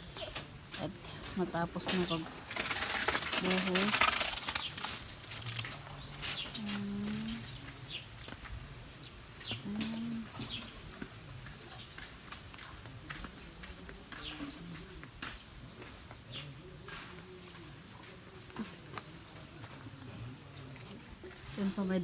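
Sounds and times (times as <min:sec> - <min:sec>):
small birds chirping: 0:00.0 - 0:22.0
low coo-like tones: 0:09.6 - 0:10.6.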